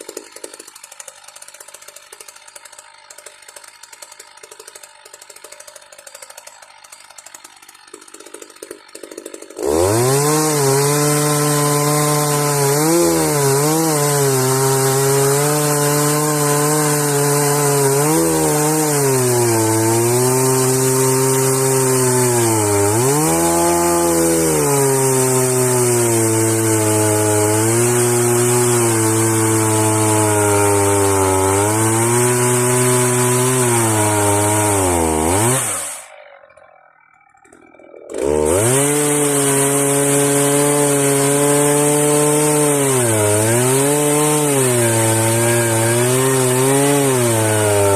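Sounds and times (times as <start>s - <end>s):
chainsaw cutting log: 0.0s - 47.9s.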